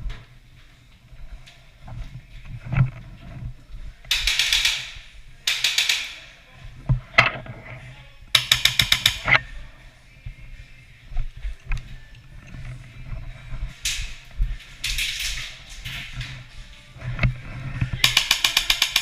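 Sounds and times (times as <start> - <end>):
airsoft guns firing bursts: 18.0 - 19.0.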